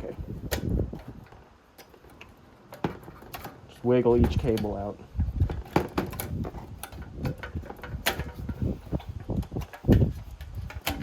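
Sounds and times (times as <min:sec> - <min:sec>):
plastic clicks and rattles of plugs: 0:00.4 - 0:11.0.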